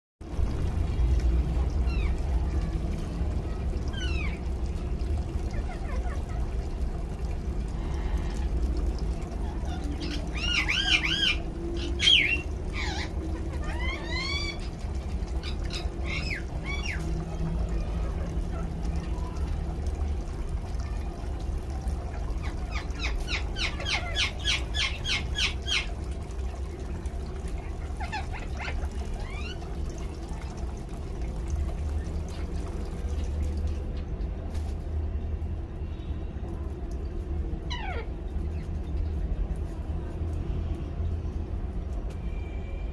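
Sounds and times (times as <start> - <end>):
shower water running: 0.2 - 35.6
parakeet squawking: 9.6 - 14.8, 37.7 - 38.6.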